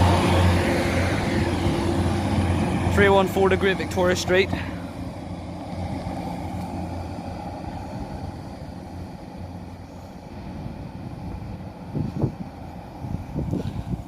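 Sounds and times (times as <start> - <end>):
train diesel engine humming: 0.0 - 14.0.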